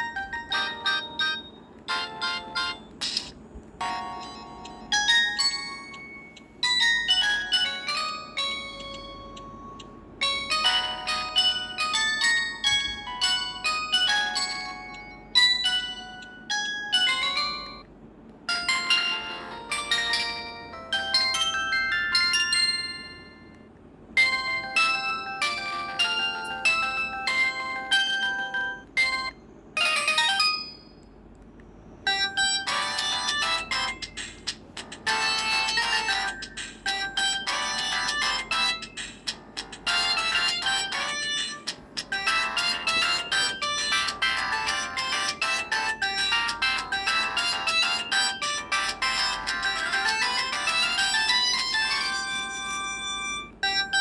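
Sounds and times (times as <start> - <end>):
mobile phone ringtone melody: 0.0 - 3.2, 3.8 - 17.9, 18.5 - 31.0, 32.1 - 54.0.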